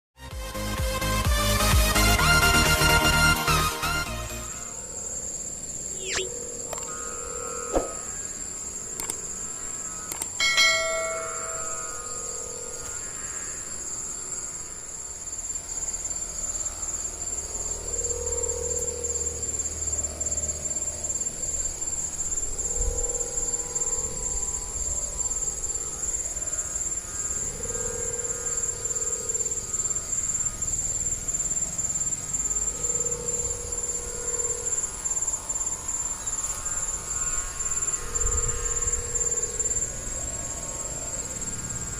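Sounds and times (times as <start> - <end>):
high-pitched whine: 3.1 - 41.9
sharp knock with ringing tone: 7.6 - 8.2
kite hummers droning in wind: 16.9 - 41.9.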